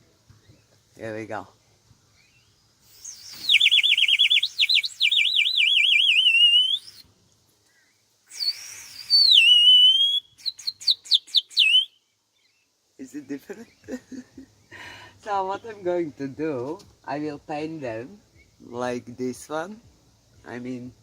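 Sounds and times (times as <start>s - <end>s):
water whistle warbling trill: 3.0s - 7.0s, 8.4s - 10.2s.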